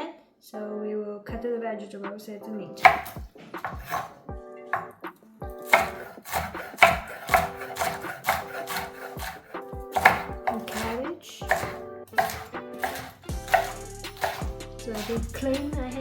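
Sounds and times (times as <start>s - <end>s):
background music: 0.6s - 16.0s
knife chopping on cutting board: 2.8s - 4.2s, 4.8s - 5.0s, 5.6s - 15.6s.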